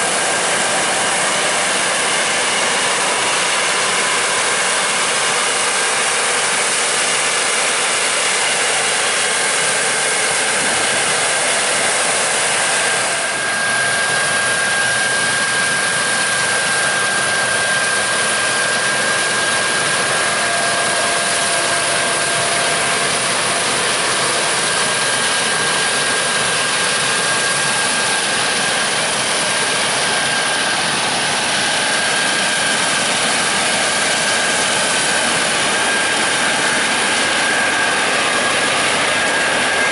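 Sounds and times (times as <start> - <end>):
high constant whine: 0.0 - 39.9
machinery rushing hiss: 0.0 - 39.9.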